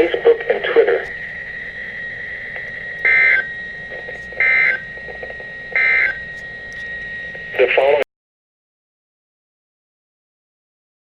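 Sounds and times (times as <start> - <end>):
radio hiss: 0.0 - 6.4, 7.4 - 8.0
digital data screech bursts: 3.0 - 5.2, 5.8 - 6.2.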